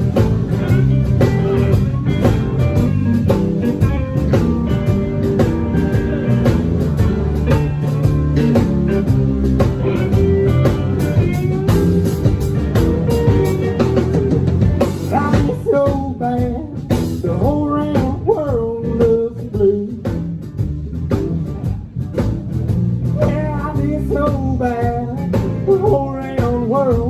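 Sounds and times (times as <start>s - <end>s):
country band playing blues: 0.0s - 27.0s.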